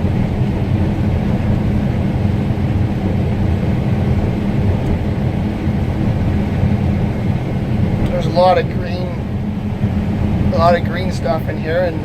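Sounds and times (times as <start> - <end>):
combine harvester engine drone: 0.0 - 12.0.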